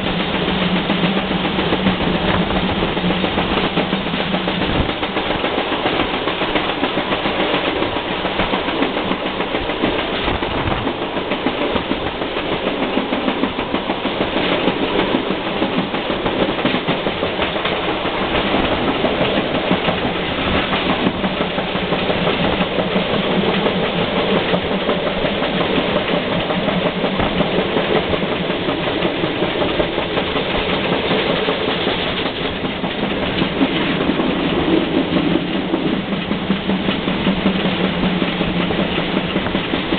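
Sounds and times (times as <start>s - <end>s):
steam locomotive running: 0.0s - 39.9s.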